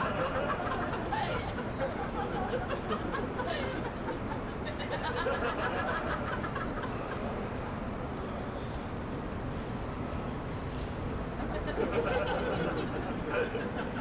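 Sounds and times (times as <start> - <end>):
people talking and chuckling: 0.0 - 7.6, 11.4 - 14.0
steady background noise: 0.0 - 14.0.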